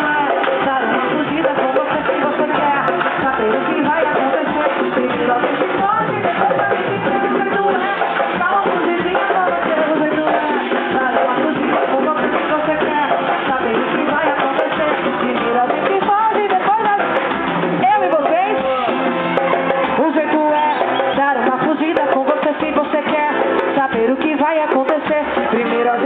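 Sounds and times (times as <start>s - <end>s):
drums playing: 0.0s - 26.0s
voices singing: 17.8s - 26.0s.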